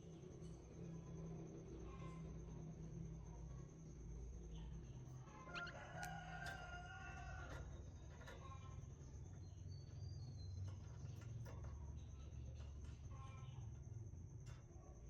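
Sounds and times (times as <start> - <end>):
steady low hum: 0.0 - 15.0
faint rooster crowing: 5.2 - 8.8.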